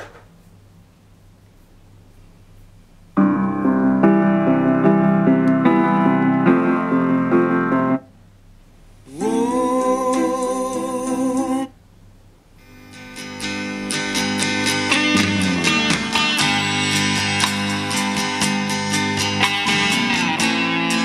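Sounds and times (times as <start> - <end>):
piano-like music: 3.2 - 8.0
plucked guitar: 3.2 - 8.0, 12.9 - 21.0.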